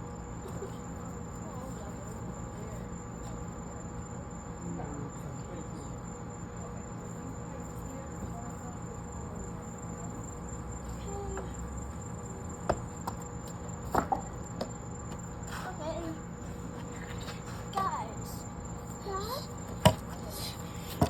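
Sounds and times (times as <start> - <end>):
crickets trilling: 0.0 - 21.0.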